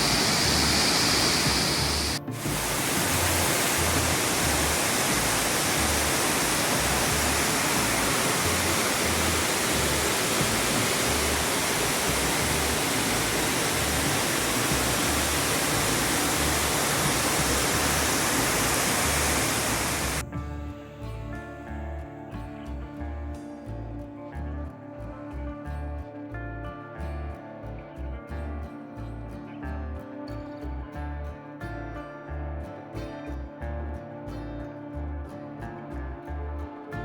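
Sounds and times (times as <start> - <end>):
waterfall roaring: 0.0 - 20.2.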